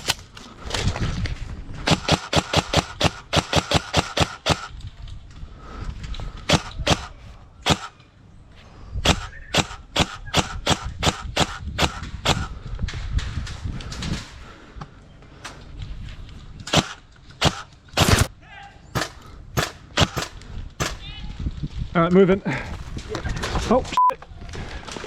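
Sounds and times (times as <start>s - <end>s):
airsoft rifle shots: 1.9s - 4.8s, 6.5s - 8.0s, 9.0s - 12.6s, 16.7s - 18.3s, 19.0s - 21.1s.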